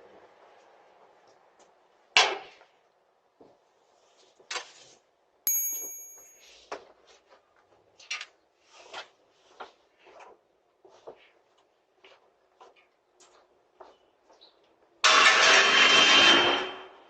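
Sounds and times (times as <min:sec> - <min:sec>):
sharp metallic ding: 0:05.5 - 0:06.4.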